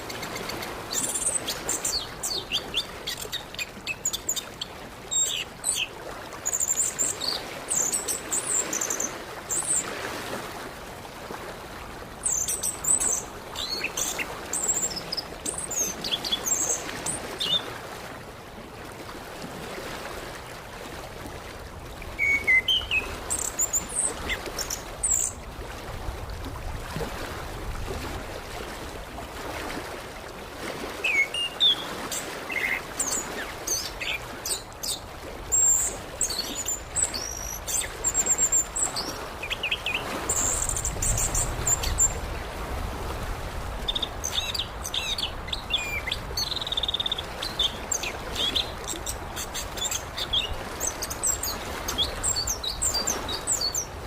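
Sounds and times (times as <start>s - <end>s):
bird singing chirps and whistles: 22.2s - 24.1s.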